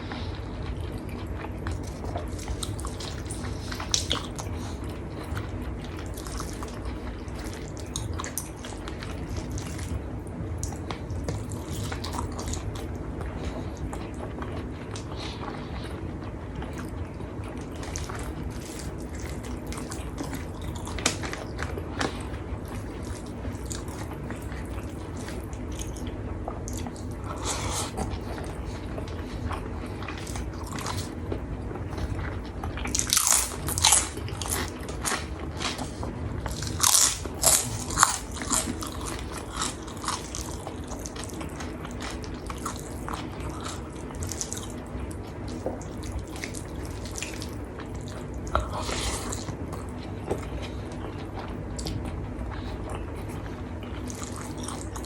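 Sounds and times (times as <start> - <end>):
person chewing food: 0.0 - 55.0.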